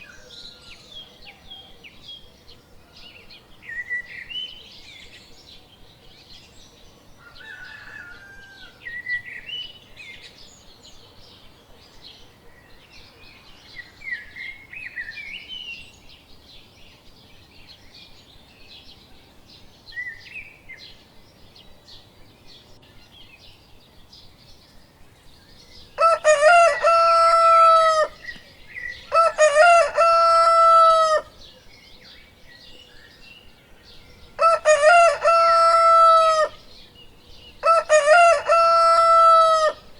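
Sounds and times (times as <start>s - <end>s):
rooster crowing: 7.2s - 9.0s, 26.0s - 28.2s, 29.1s - 31.3s, 34.4s - 36.6s, 37.6s - 39.8s.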